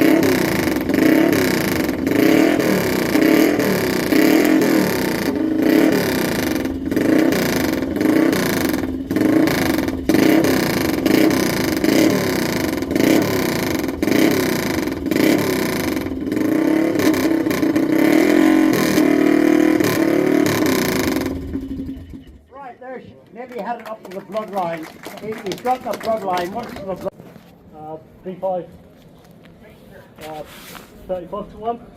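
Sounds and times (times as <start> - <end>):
motorcycle engine revving: 0.0 - 22.5.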